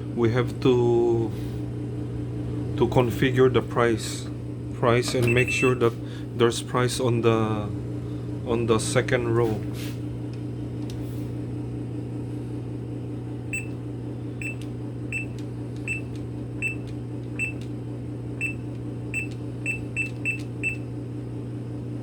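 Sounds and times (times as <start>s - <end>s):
low hum: 0.0s - 20.9s
keypad beeps: 5.2s - 5.8s, 13.5s - 13.8s, 14.4s - 17.6s, 18.4s - 20.9s.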